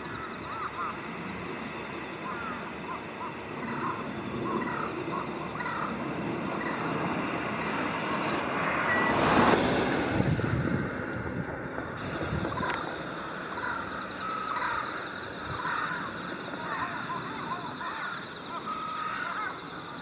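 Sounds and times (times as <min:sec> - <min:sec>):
crows cawing: 0:00.0 - 0:01.1, 0:02.2 - 0:07.0, 0:12.4 - 0:20.0
vehicle passing: 0:03.7 - 0:14.8.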